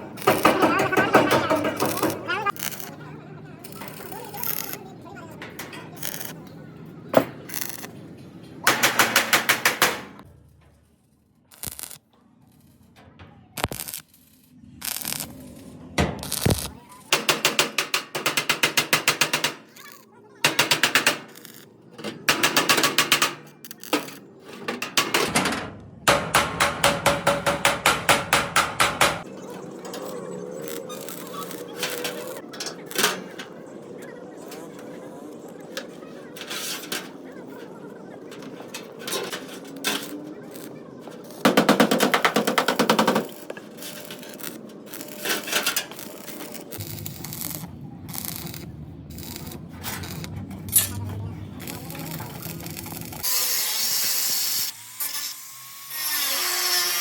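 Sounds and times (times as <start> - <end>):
pneumatic air tool hammering: 0.1 - 2.9, 8.7 - 10.2, 16.2 - 19.8, 20.5 - 21.6, 22.3 - 25.4, 26.1 - 29.3, 39.1 - 50.9
rapid hammer blows on metal: 26.1 - 29.3, 41.3 - 47.5.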